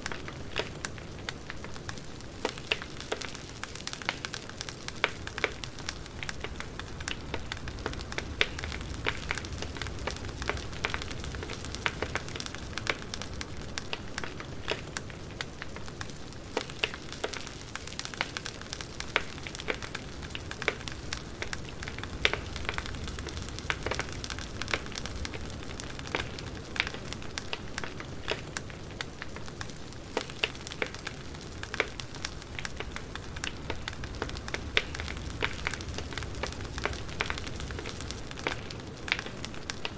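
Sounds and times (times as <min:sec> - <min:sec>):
burning wood crackling and popping: 0:00.0 - 0:39.9
campfire flames rushing: 0:00.0 - 0:39.9.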